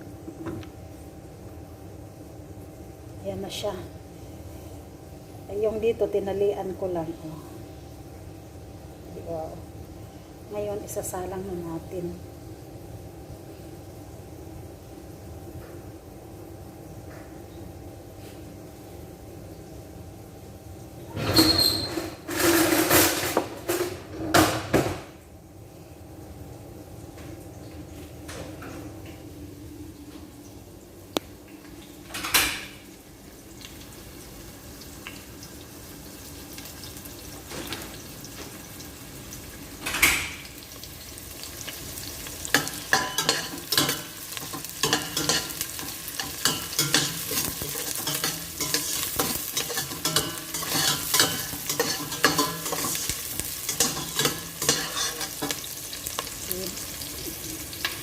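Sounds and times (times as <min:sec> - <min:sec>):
food sizzling in hot oil: 0:32.8 - 0:58.0.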